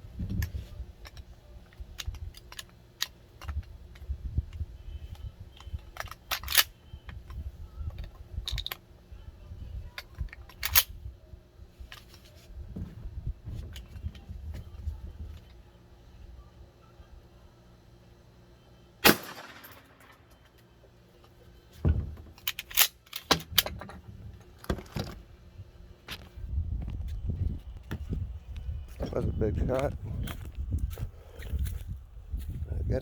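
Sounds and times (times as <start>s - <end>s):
sharp cracks: 19.0s - 20.2s.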